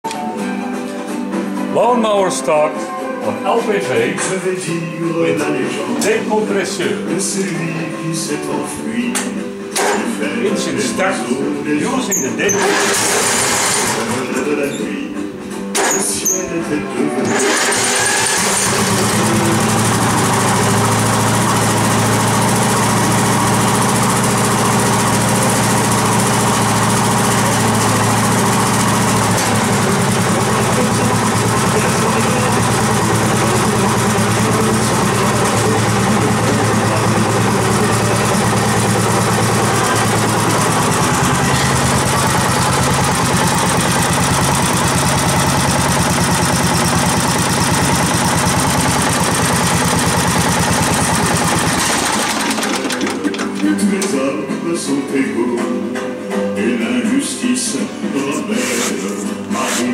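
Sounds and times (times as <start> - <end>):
garden tractor engine idling: 12.6 - 14.3, 17.3 - 54.1.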